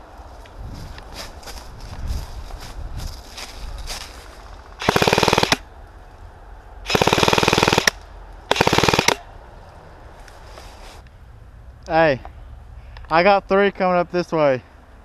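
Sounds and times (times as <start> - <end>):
airsoft gun firing bursts: 4.8 - 5.6, 6.9 - 9.2.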